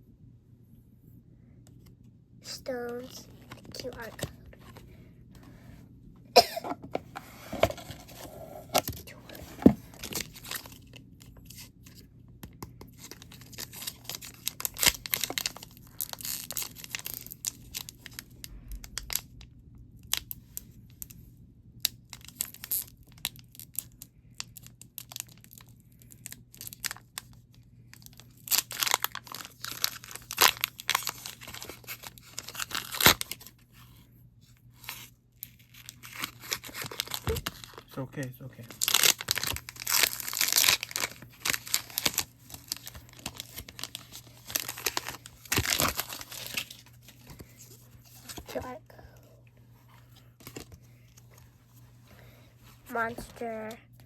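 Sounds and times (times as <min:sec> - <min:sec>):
foil wrapper torn and crinkled: 0:12.9 - 0:19.4, 0:21.8 - 0:33.5, 0:34.8 - 0:37.9, 0:38.7 - 0:48.7.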